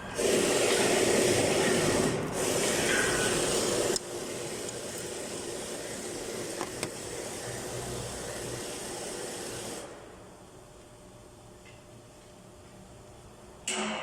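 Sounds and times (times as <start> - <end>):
whooshing mechanical noise: 0.0 - 10.4.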